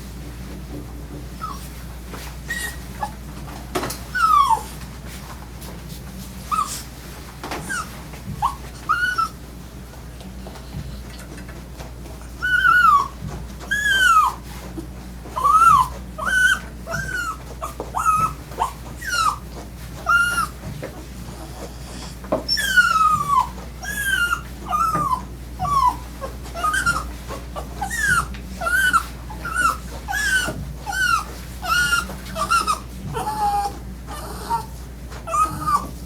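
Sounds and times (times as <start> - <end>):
dog whining: 1.4 - 1.7, 2.4 - 3.2, 4.0 - 4.9, 6.4 - 6.9, 7.6 - 9.4, 12.2 - 14.7, 15.3 - 20.8, 21.4 - 36.0.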